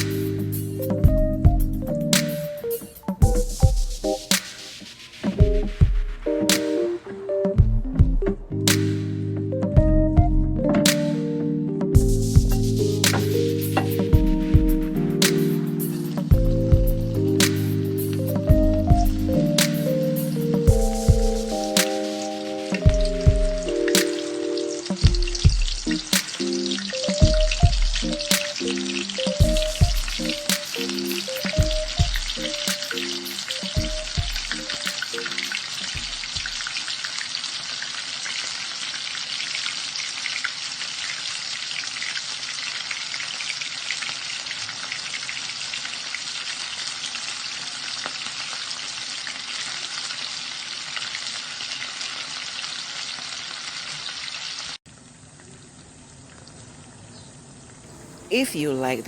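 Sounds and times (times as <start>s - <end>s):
background music: 0.0s - 36.1s
chicken deep-frying in hot oil: 35.0s - 57.6s.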